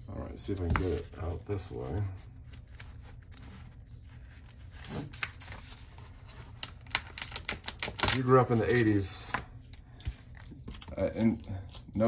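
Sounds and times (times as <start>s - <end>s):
cardboard rustling and scraping: 0.4s - 6.6s.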